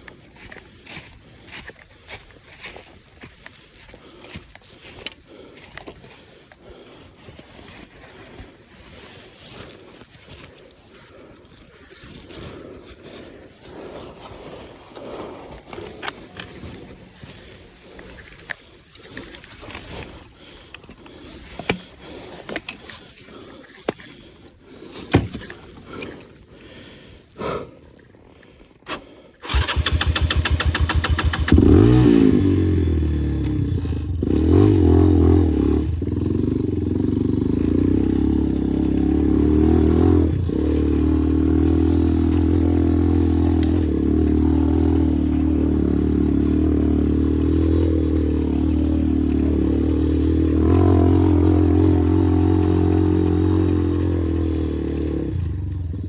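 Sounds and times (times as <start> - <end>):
motorcycle engine starting: 28.9 - 56.0
motorcycle engine running: 29.4 - 56.0.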